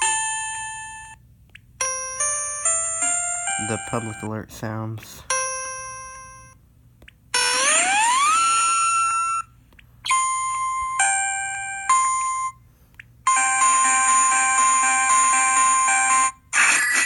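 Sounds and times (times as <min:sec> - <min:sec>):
harsh multi-tone alert: 0:03.1 - 0:06.5, 0:07.4 - 0:09.4, 0:13.3 - 0:17.0.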